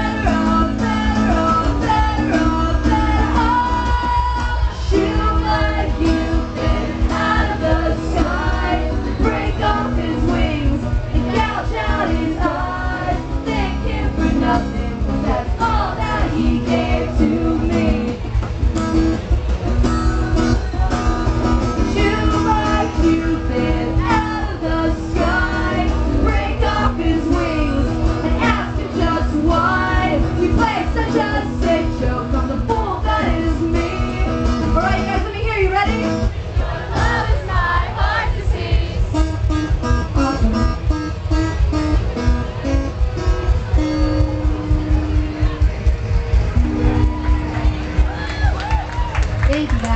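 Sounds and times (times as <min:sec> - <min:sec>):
live rock band playing: 0:00.0 - 0:49.9.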